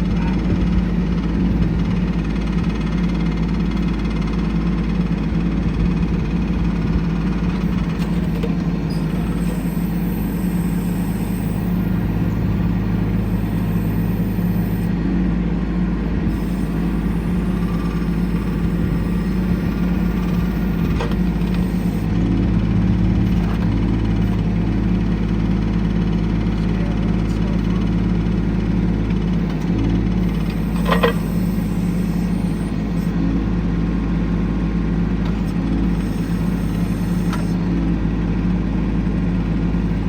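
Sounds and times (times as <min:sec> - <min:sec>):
tractor diesel engine running: 0:00.0 - 0:40.0.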